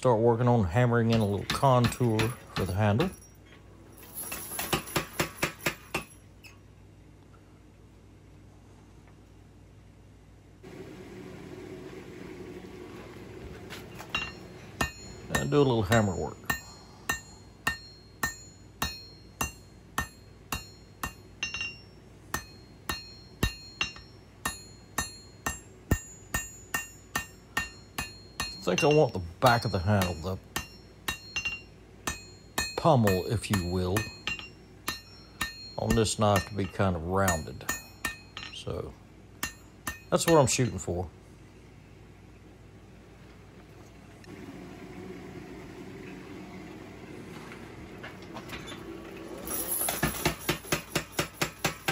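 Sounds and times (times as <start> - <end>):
workshop hum and hiss: 0.0 - 51.9
hammer striking steel on anvil: 0.9 - 3.3, 4.6 - 6.2, 13.9 - 41.0, 49.9 - 51.9.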